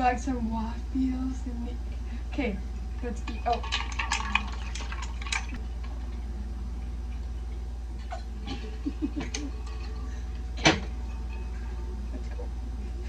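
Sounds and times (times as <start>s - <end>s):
low pulsing electrical hum: 0.0s - 13.0s
utensils clicking against dishes: 3.2s - 6.0s, 8.0s - 11.6s.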